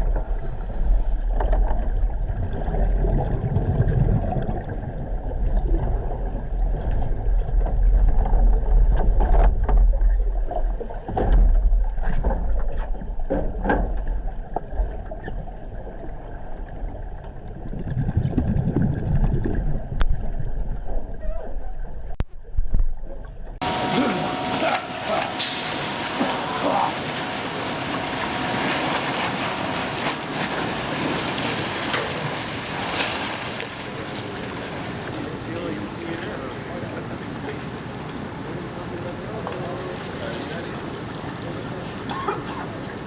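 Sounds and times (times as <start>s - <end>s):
steady low rumble: 0.0s - 23.7s
water sloshing and churning: 0.0s - 43.0s.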